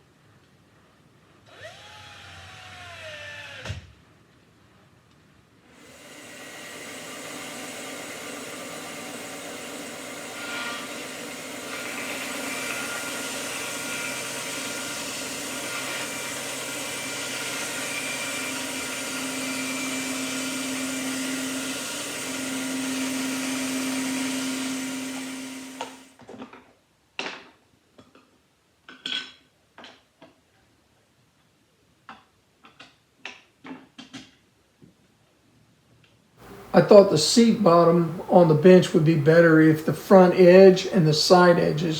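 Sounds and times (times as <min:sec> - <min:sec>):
power tool motor running: 0:01.5 - 0:03.9, 0:05.8 - 0:26.1, 0:36.4 - 0:41.9
wood and tools knocking: 0:06.7 - 0:26.0.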